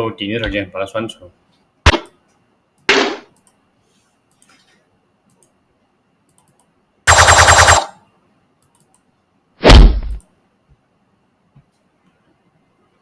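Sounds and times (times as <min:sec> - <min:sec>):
heavy bass thud: 0:09.6 - 0:10.2.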